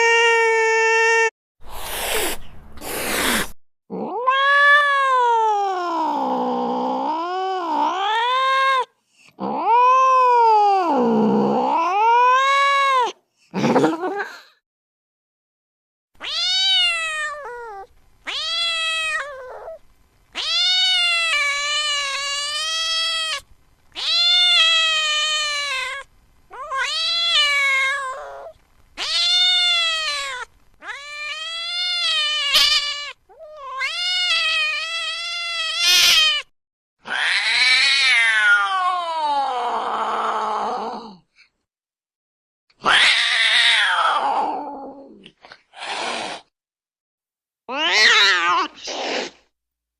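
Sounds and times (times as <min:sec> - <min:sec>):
cat yowling: 0:03.9 - 0:13.2, 0:16.2 - 0:23.4, 0:24.0 - 0:41.2, 0:42.8 - 0:45.2, 0:47.7 - 0:49.3.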